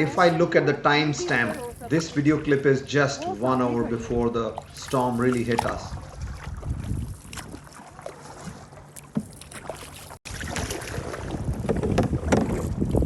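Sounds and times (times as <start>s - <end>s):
water splashing and lapping: 0.0s - 13.0s
paddle splashes: 1.2s - 13.0s
wind rumble on microphone: 5.3s - 7.8s, 10.3s - 13.0s.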